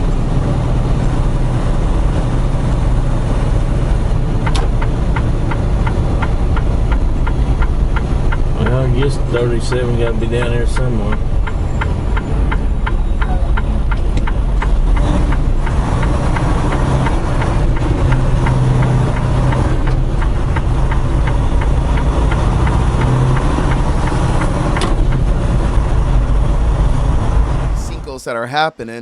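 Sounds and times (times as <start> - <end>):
truck engine rumbling: 0.0 - 29.0
rapid regular ticking: 4.4 - 26.4.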